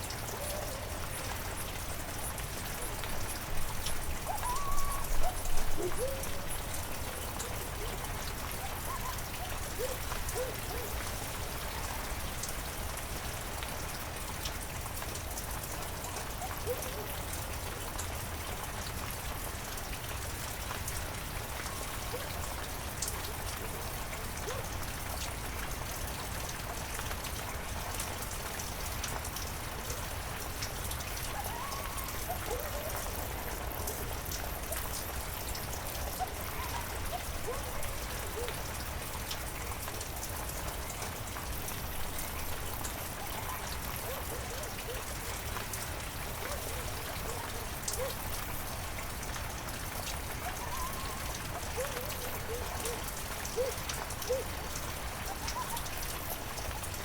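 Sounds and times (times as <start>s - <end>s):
heavy rain: 0.0s - 57.0s.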